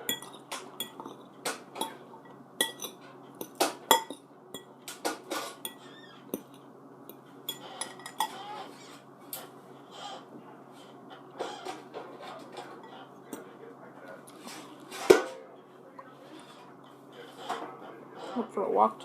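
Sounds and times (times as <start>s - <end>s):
cutlery clinking on a plate: 0.0s - 8.7s.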